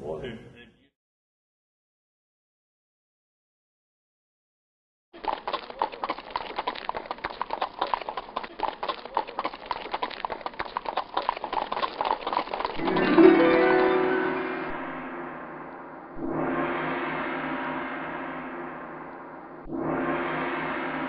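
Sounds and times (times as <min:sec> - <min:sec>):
horse hooves galloping: 0:05.2 - 0:13.9
gong ringing: 0:12.8 - 0:19.6.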